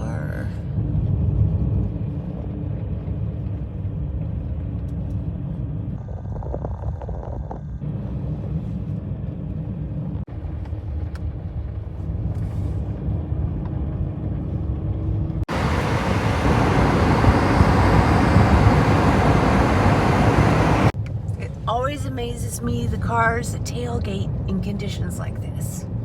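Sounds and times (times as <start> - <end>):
car road and engine rumble: 15.4 - 26.0
rushing hiss of road noise: 15.5 - 21.0.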